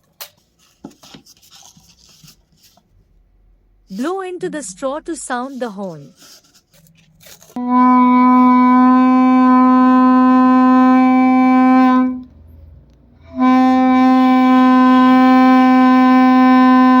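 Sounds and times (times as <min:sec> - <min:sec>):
paper-cup air horn blowing: 0:06.0 - 0:12.3, 0:13.2 - 0:17.0.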